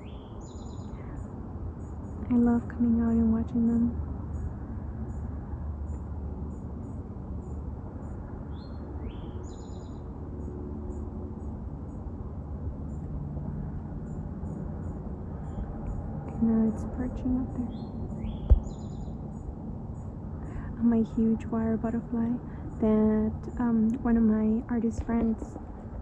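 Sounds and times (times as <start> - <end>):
small birds chirping: 0.0 - 4.5, 5.8 - 10.1, 17.3 - 20.8
low background rumble: 0.0 - 26.0.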